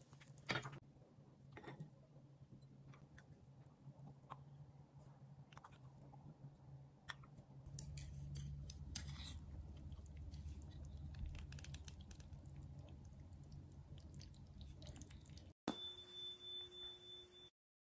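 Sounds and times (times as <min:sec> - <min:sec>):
low steady hum: 0:00.5 - 0:17.5
person chewing: 0:07.7 - 0:15.5.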